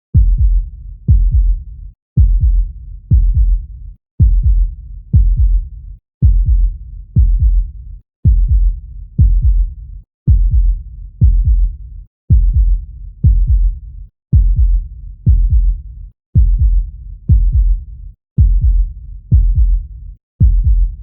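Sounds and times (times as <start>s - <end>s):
heartbeat double thump: 0.2s - 1.6s, 2.2s - 3.6s, 4.2s - 5.6s, 6.2s - 7.6s, 8.2s - 9.7s, 10.3s - 11.7s, 12.3s - 13.7s, 14.3s - 15.8s, 16.4s - 17.8s, 18.4s - 19.8s, 20.4s - 21.0s.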